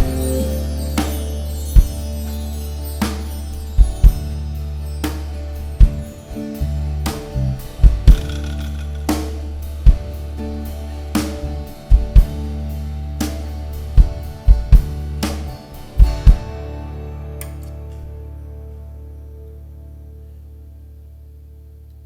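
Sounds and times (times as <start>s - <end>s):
snare and cymbal hits: 0.0s - 4.4s, 11.2s - 12.5s
heavy bass drum kicks: 0.0s - 17.0s
rock band playing: 0.0s - 19.5s.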